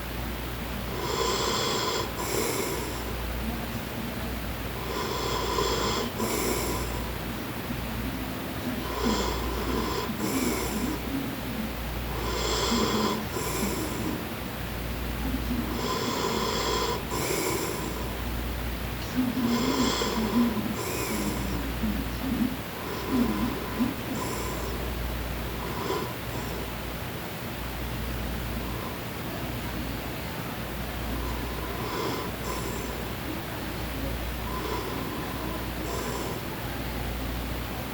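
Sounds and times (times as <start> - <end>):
steady hiss: 0.0 - 37.9
man snoring: 0.9 - 3.1, 4.8 - 7.0, 8.8 - 11.0, 12.1 - 14.2, 15.7 - 18.1, 19.4 - 21.6, 22.8 - 24.8, 25.6 - 26.6, 34.5 - 36.4.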